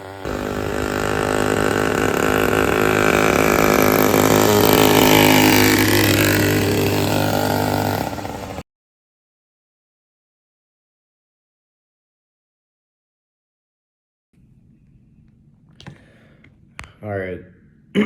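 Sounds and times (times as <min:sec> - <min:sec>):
two-stroke engine running: 0:00.0 - 0:08.6.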